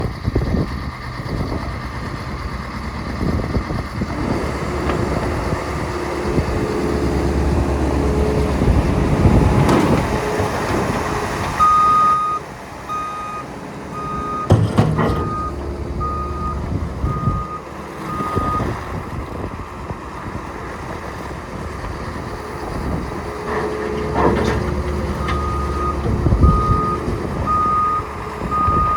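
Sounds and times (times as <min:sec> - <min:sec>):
diesel engine running and revving: 0:00.0 - 0:28.9
backup alarm beeping: 0:11.6 - 0:18.7, 0:25.2 - 0:28.9.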